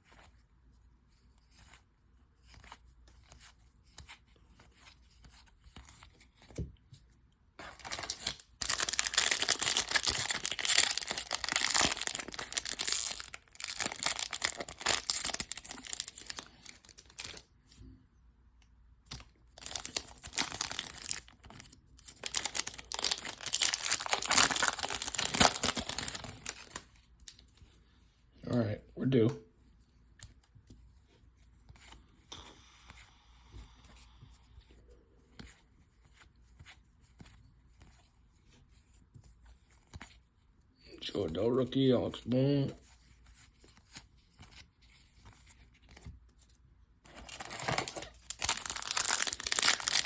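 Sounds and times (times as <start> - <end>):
foil wrappers tearing and crinkling: 7.7 - 17.4, 19.6 - 26.8, 47.2 - 50.0.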